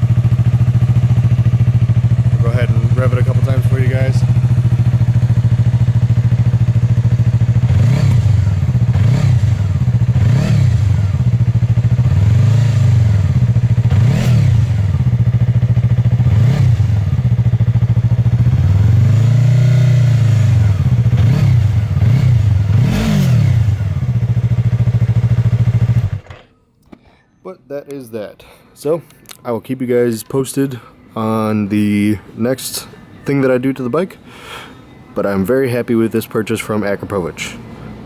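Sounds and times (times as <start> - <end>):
motorcycle engine revving: 0.0 - 26.5.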